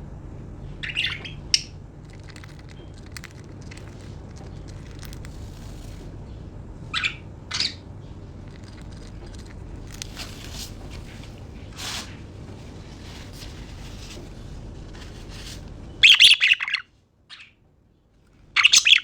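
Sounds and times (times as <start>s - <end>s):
budgerigars chirping: 0.8s - 1.8s, 6.9s - 7.9s, 16.0s - 17.6s, 18.5s - 19.0s
birds pecking at food: 1.0s - 6.3s, 7.6s - 16.8s.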